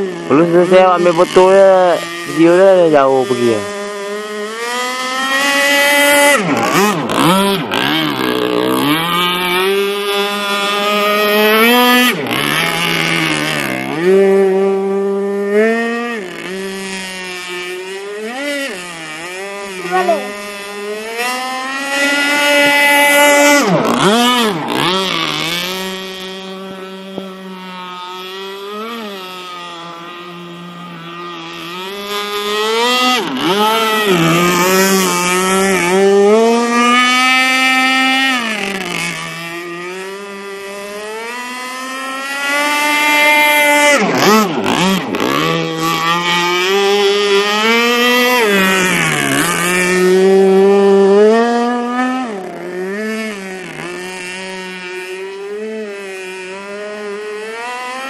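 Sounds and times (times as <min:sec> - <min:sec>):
model boat engine revving: 0:00.0 - 0:58.0.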